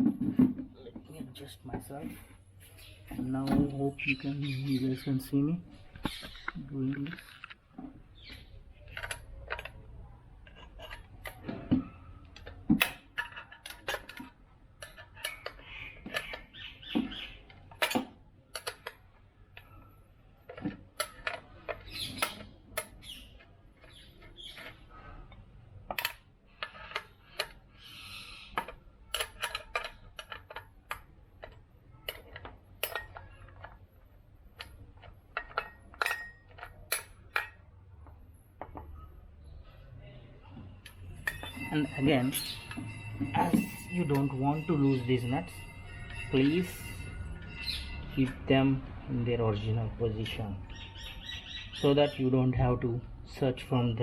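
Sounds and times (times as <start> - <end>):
metallic tool clicks: 28.5 - 33.8.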